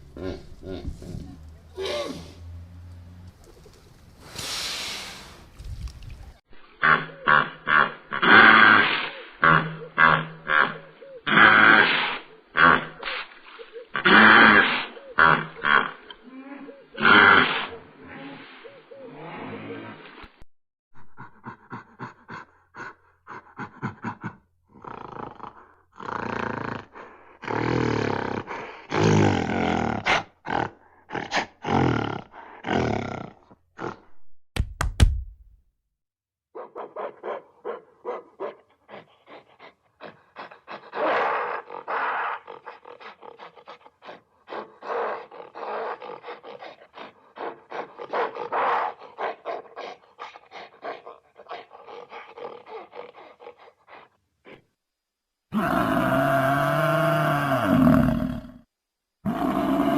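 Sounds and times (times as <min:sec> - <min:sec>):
large animals calling: 0:09.3 - 0:20.0.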